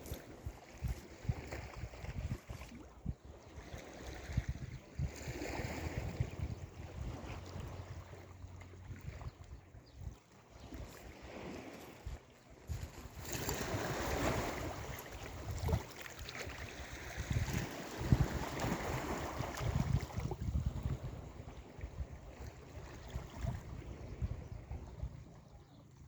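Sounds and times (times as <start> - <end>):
wind buffeting microphone: 0.0 - 8.2, 8.8 - 25.4
sea waves breaking: 10.3 - 24.6.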